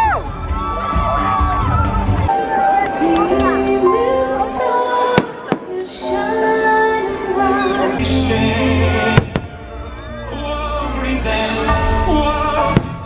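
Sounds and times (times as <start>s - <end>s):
orchestral music with singing: 0.0s - 13.0s
firework bangs: 9.1s - 9.6s, 12.7s - 13.0s.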